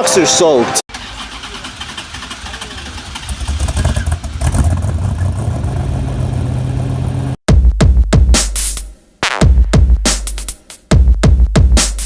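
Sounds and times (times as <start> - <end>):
car engine running: 0.9 - 7.4.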